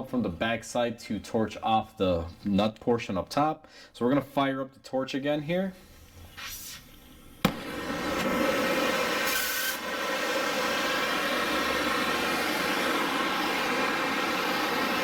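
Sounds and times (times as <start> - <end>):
sharp gas hiss: 5.7 - 15.0
torch flame rushing: 5.8 - 15.0
torch igniting with a pop: 6.1 - 15.0.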